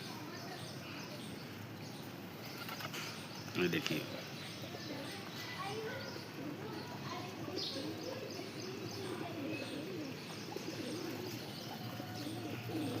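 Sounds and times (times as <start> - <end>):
small birds chirping: 0.0 - 13.0
pigeons cooing: 3.9 - 13.0.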